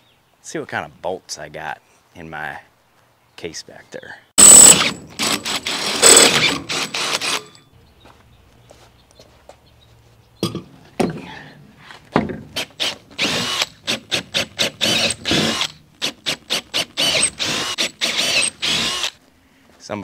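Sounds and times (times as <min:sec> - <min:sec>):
drill bit squealing: 0:04.4 - 0:07.6, 0:12.8 - 0:19.2
power drill boring into metal: 0:04.4 - 0:07.6, 0:12.8 - 0:19.2.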